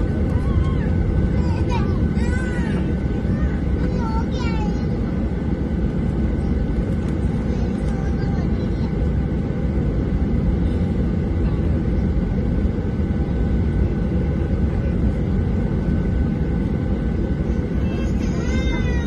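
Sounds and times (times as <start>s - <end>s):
jet engines rumbling in cabin: 0.0s - 19.0s.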